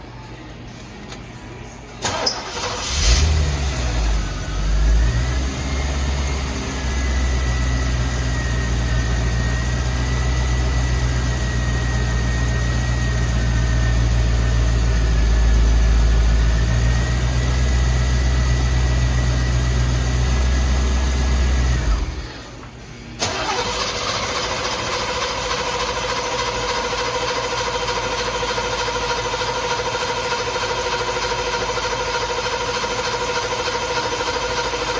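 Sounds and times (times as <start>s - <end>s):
car engine starting and idling: 2.0s - 34.9s.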